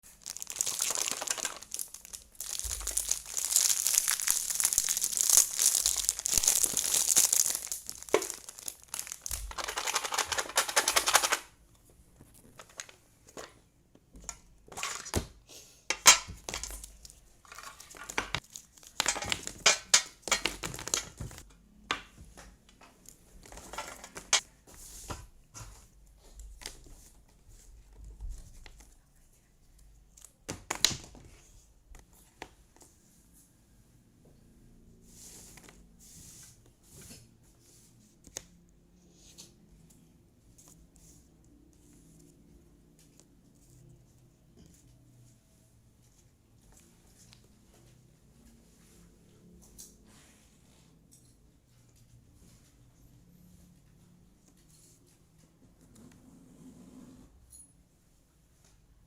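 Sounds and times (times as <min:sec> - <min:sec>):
plastic wrapping crinkling and tearing: 0:00.0 - 0:11.4, 0:16.1 - 0:21.4.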